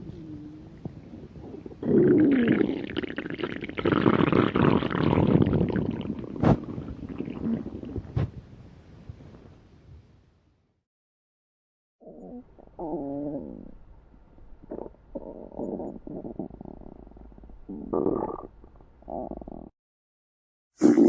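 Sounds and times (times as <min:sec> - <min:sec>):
stomach growling: 0:00.0 - 0:08.4, 0:14.6 - 0:19.7.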